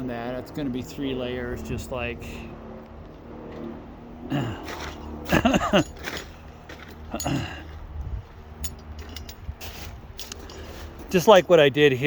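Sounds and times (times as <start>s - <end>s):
wind rumbling on microphone: 7.8s - 11.0s.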